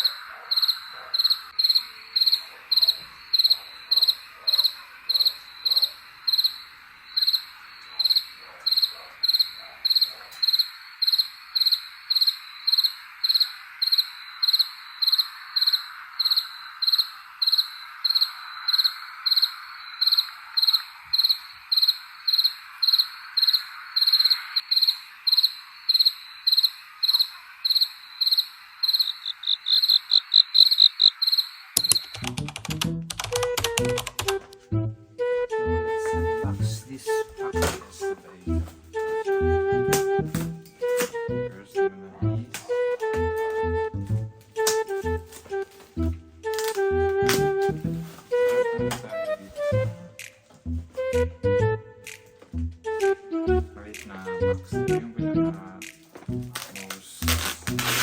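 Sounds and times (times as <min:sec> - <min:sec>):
faint insect chorus: 0:00.0 - 0:32.1
cricket chirping: 0:00.0 - 0:32.2
music: 0:32.2 - 0:58.0.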